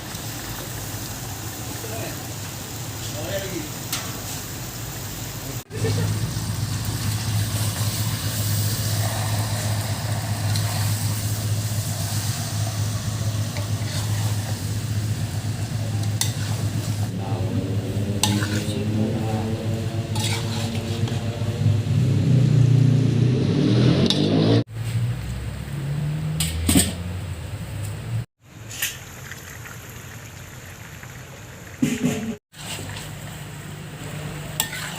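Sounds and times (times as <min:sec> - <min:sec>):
food sizzling in a pot: 0:00.0 - 0:21.4, 0:28.7 - 0:34.9
spoon scraping a pot: 0:13.5 - 0:14.5, 0:16.1 - 0:17.0, 0:18.2 - 0:18.9, 0:20.1 - 0:21.4, 0:34.6 - 0:34.9.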